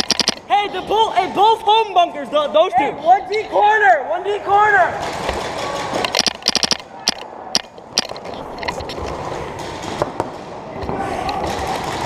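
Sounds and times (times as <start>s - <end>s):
paintball markers firing: 0.0s - 0.4s.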